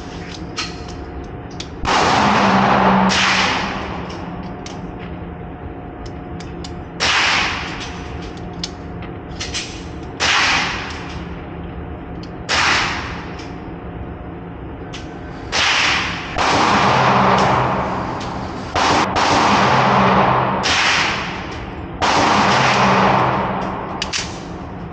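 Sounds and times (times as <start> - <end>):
gunshots with echo: 1.8 - 5.0, 7.0 - 8.0, 10.2 - 11.1, 12.5 - 13.3, 15.5 - 24.9.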